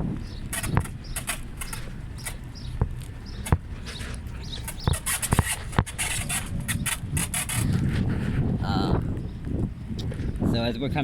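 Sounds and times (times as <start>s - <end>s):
footsteps and scuffing: 0.0s - 8.6s
steady low rumble: 0.0s - 10.5s
sharp clicks and knocks: 0.5s - 7.8s.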